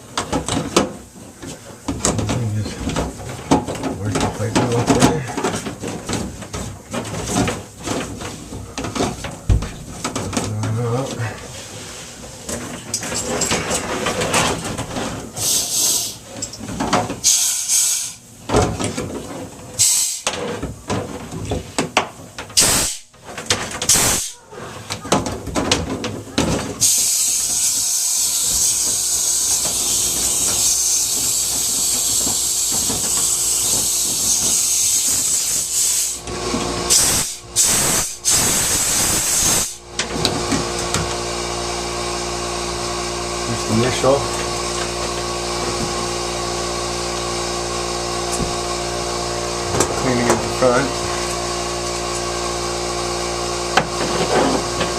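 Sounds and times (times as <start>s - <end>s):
vent pipe rustling and scraping: 0.0s - 54.9s
steady hiss: 15.4s - 16.3s, 17.2s - 18.2s, 22.6s - 23.2s, 26.8s - 36.3s, 36.9s - 39.8s.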